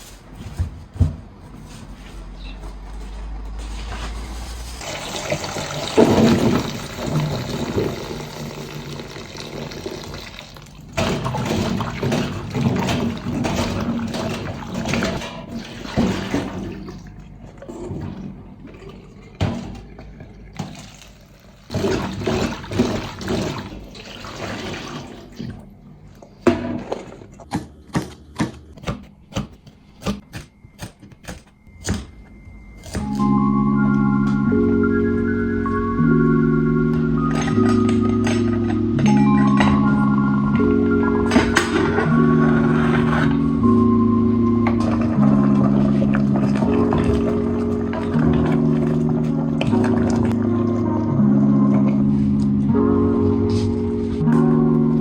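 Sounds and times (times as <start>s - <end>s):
tap water running and splashing: 4.8s - 17.2s, 19.4s - 25.7s, 44.7s - 50.5s.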